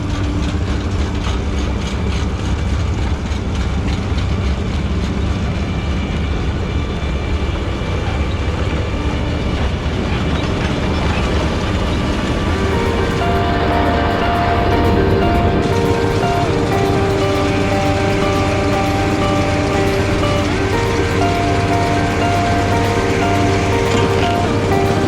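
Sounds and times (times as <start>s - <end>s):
tractor engine drone: 0.0s - 25.0s
music: 8.8s - 25.0s.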